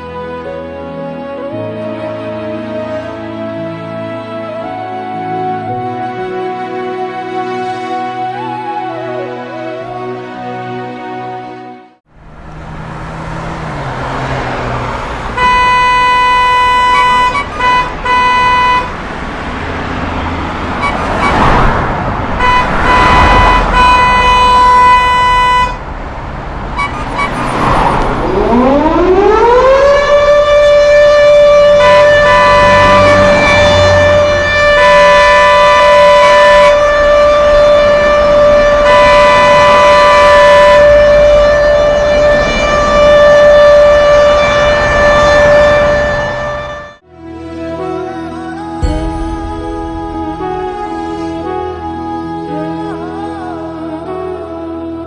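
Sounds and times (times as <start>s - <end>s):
passing traffic: 0.0s - 55.0s
horn blasts: 15.3s - 19.2s, 20.2s - 25.9s, 26.7s - 52.7s.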